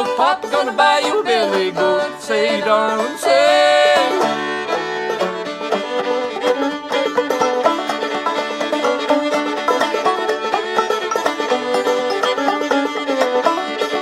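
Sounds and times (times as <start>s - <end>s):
person singing: 0.0s - 4.4s
banjo picking: 0.0s - 14.0s
fiddle: 0.0s - 14.0s.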